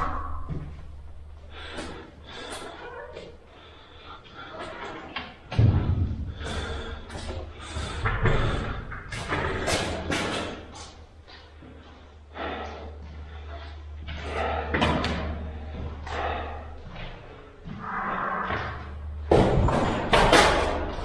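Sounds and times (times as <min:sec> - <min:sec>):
steady low hum: 0:00.0 - 0:21.0
thumps and bangs: 0:05.5 - 0:06.8, 0:18.5 - 0:21.0.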